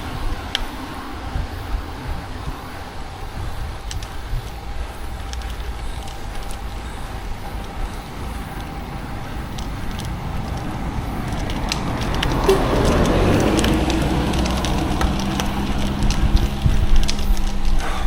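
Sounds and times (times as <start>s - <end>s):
light bike clicks: 0.0s - 18.0s
road and wind rumble: 0.0s - 18.0s.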